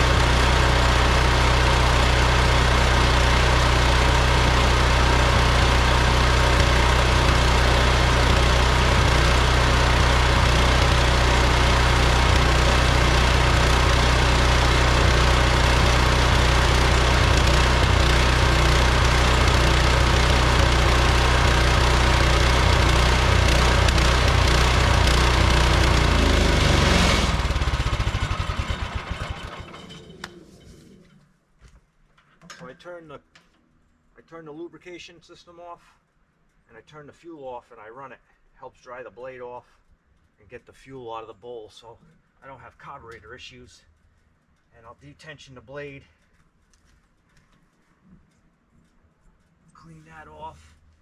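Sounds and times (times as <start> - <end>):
sawmill gasoline engine running: 0.0 - 30.8
engine spinning down: 0.0 - 31.1.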